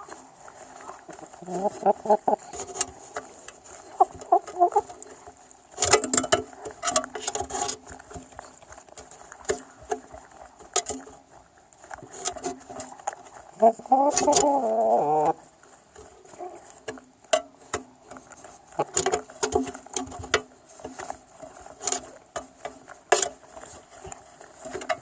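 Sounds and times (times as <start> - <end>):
chickens clucking: 0.0 - 6.8, 13.4 - 16.8, 18.6 - 20.2
chickens pecking feed: 0.0 - 25.0.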